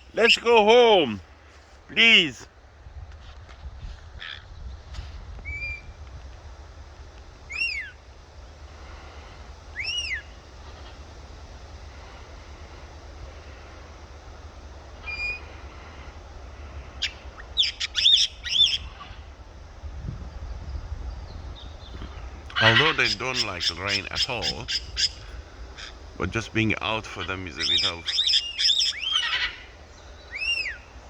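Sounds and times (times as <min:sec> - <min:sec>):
kites calling: 0:00.0 - 0:01.2, 0:01.9 - 0:02.4, 0:20.3 - 0:31.0
wind rumble on microphone: 0:02.8 - 0:14.0, 0:18.5 - 0:26.7.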